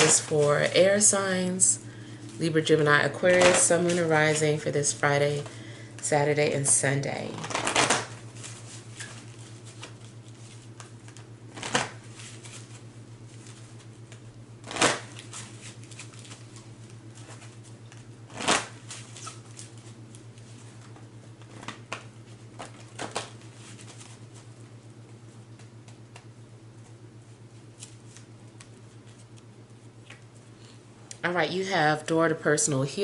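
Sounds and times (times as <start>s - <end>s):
cards being shuffled: 7.3s - 24.5s, 27.5s - 30.4s.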